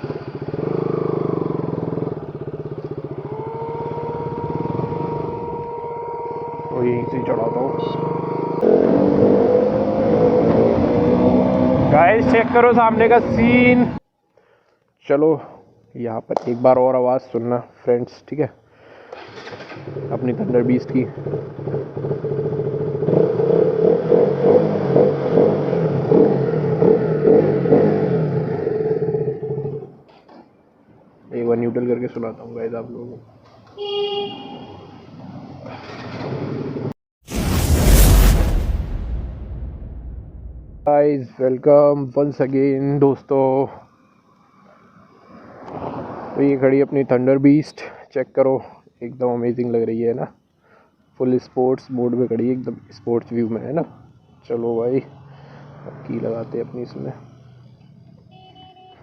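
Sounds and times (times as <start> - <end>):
motorcycle engine revving: 0.0 - 14.0, 19.3 - 30.0
steady whine: 37.3 - 40.9.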